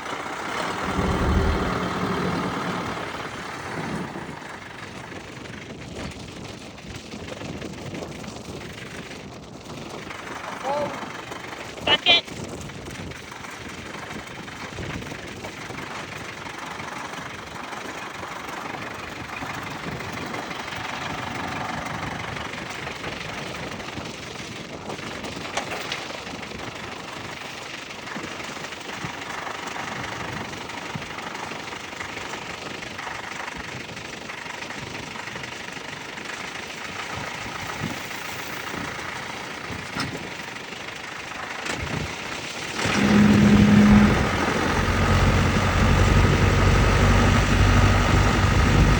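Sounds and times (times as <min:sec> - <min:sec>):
diesel engine running: 0:00.0 - 0:05.6, 0:16.2 - 0:23.3, 0:35.9 - 0:48.9.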